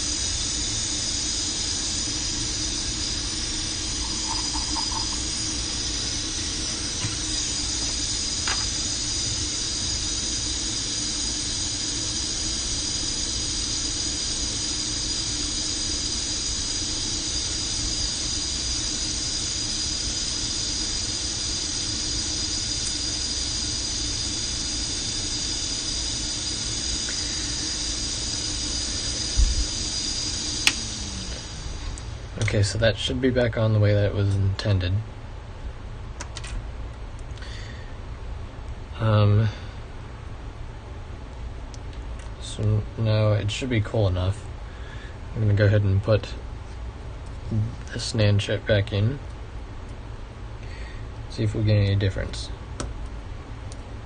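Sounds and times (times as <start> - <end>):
hot air blowing: 0.0 - 33.2
fan hum: 0.0 - 54.0.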